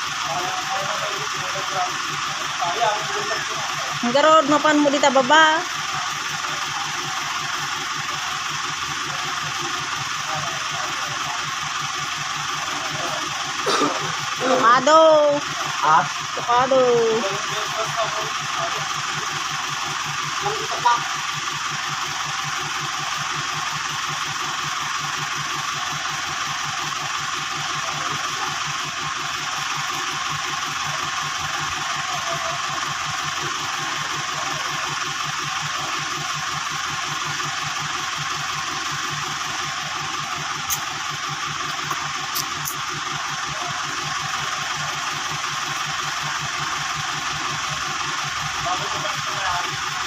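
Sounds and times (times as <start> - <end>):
engine running: 0.0 - 50.0
sharp clicks: 41.7 - 42.9.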